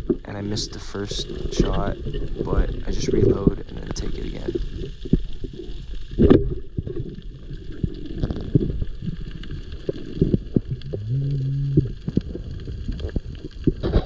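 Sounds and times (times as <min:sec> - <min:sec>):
underwater rumble: 0:00.0 - 0:14.0
underwater clicks: 0:06.1 - 0:14.0
short low hum: 0:10.7 - 0:12.2.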